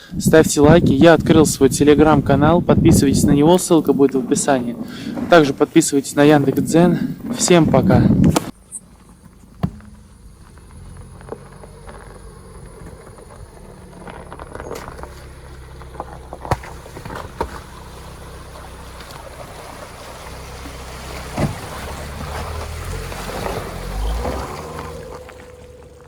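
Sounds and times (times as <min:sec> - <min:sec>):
sharp knocks: 0:08.3 - 0:11.5
vehicle engine running: 0:08.5 - 0:26.0.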